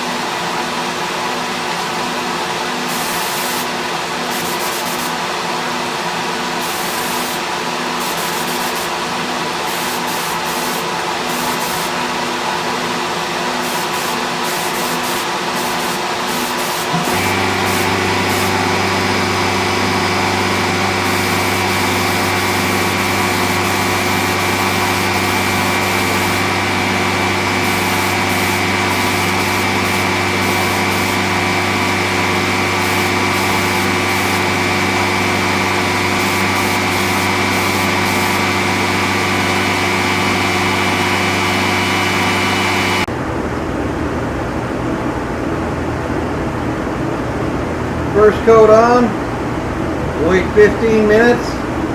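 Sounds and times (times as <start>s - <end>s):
steady machine hum: 0.0s - 51.9s
paint spray gun hissing: 2.9s - 5.3s, 6.4s - 43.1s.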